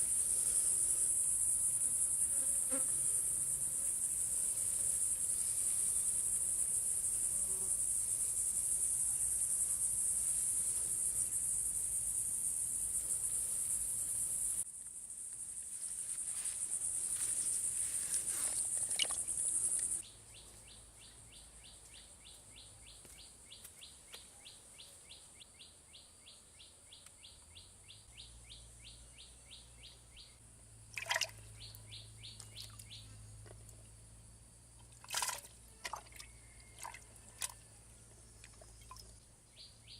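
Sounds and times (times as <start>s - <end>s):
crickets buzzing: 0.0s - 20.1s.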